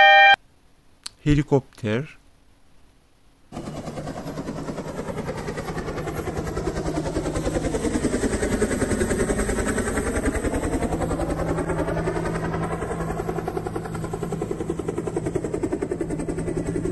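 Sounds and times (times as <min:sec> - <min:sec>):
helicopter rotor chop: 0:03.5 - 0:16.9.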